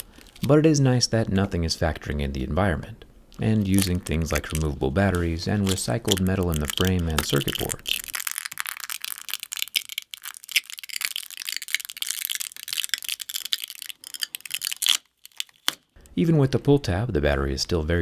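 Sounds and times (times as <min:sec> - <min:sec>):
adhesive crackling and tearing: 0:00.0 - 0:00.6, 0:03.3 - 0:16.0.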